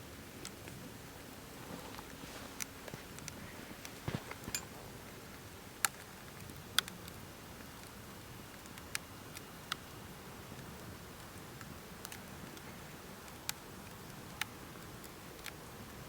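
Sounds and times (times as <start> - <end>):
wood fire pops and snaps: 0.4 - 15.6.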